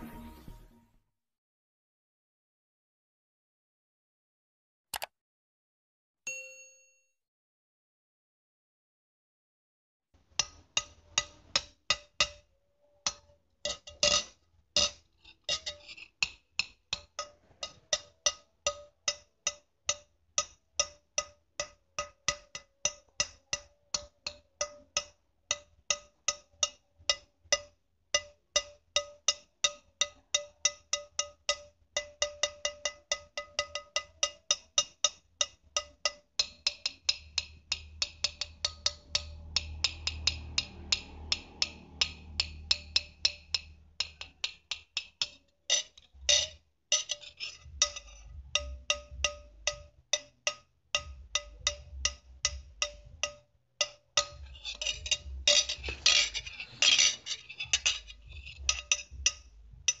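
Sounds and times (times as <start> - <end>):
ceramic plates clinking: 54.2 - 59.4.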